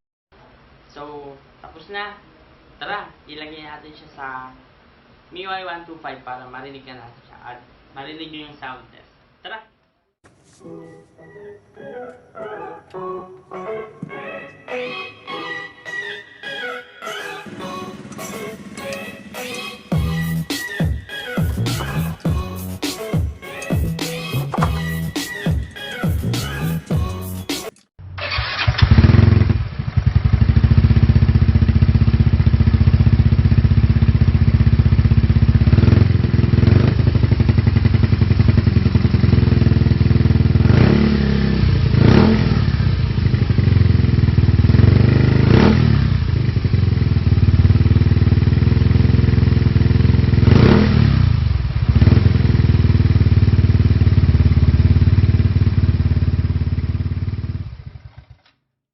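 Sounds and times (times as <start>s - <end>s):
scooter engine revving: 17.4s - 20.5s, 28.2s - 58.4s.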